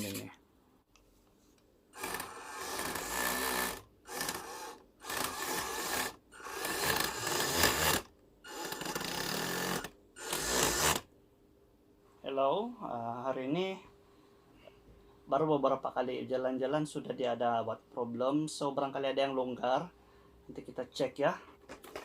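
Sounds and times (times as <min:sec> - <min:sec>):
toy truck motor grinding and whining: 0:02.0 - 0:11.1.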